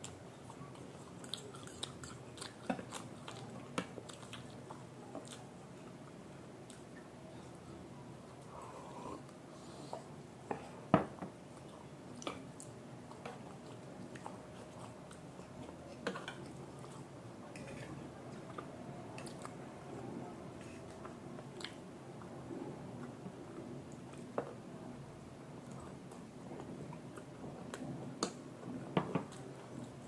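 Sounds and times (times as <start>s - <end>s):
people chewing: 0.0s - 7.6s, 11.5s - 23.2s.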